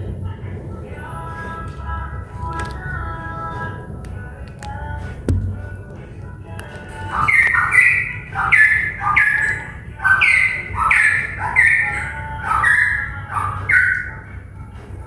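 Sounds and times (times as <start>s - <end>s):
songbird whistling phrases: 7.0s - 14.3s.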